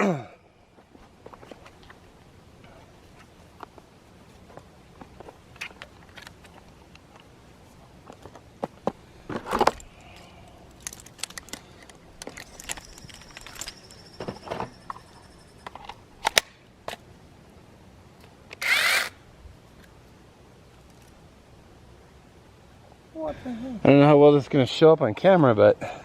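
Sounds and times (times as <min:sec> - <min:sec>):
gear handling clicks and knocks: 0:04.5 - 0:07.4, 0:08.0 - 0:17.0
loud rasping burst: 0:18.6 - 0:19.2.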